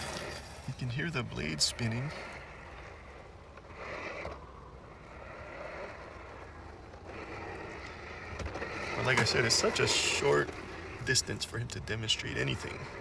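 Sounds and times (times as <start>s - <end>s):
robot lawn mower humming: 0.0s - 13.0s.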